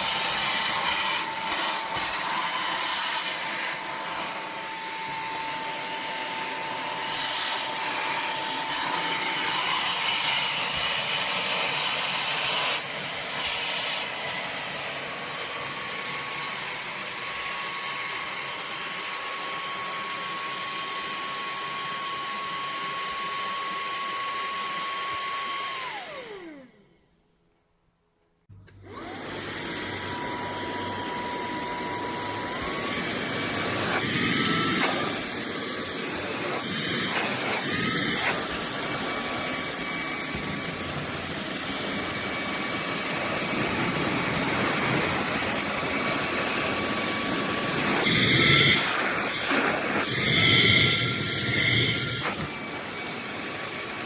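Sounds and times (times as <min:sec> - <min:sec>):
handheld vacuum motor whine: 0:00.0 - 0:27.1, 0:28.5 - 0:54.0.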